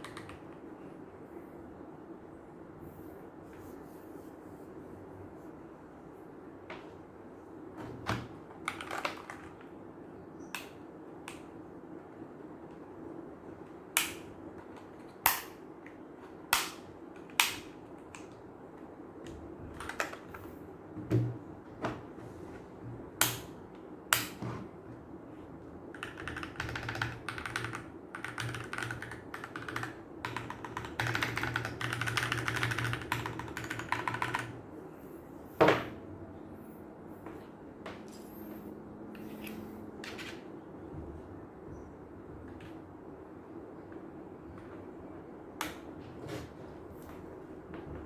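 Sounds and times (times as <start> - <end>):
rapid typing on keyboard: 0.0 - 0.5, 8.6 - 9.7, 19.6 - 20.5, 25.9 - 34.6.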